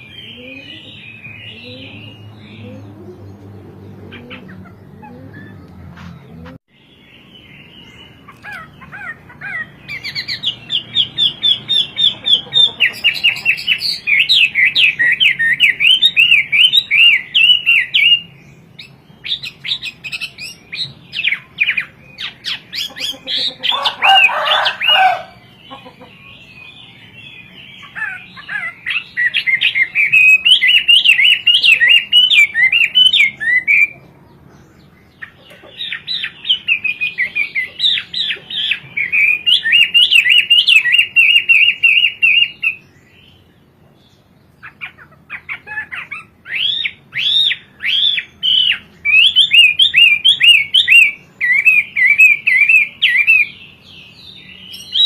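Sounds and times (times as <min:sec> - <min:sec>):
bird singing whistled notes: 0:09.8 - 0:22.8, 0:28.8 - 0:34.1, 0:35.9 - 0:43.4, 0:46.1 - 0:55.0.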